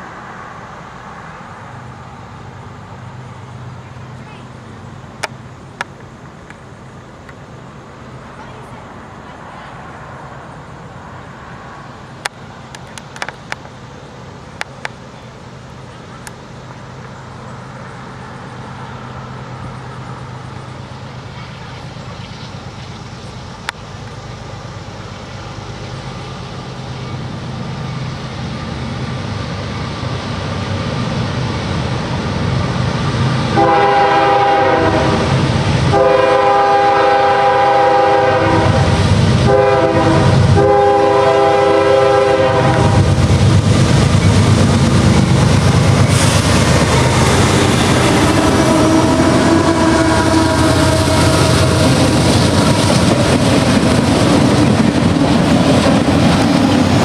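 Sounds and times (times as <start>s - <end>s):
freight train passing: 0.0s - 57.0s
train air horn blasts: 33.5s - 43.2s, 47.3s - 52.3s.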